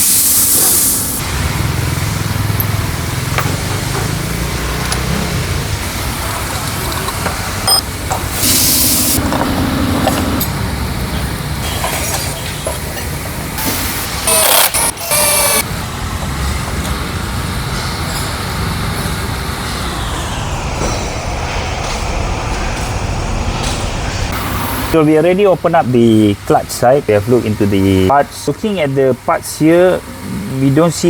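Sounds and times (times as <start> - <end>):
loud hissing bursts: 0.0 - 1.3, 8.3 - 9.8
low rumble: 8.0 - 11.6.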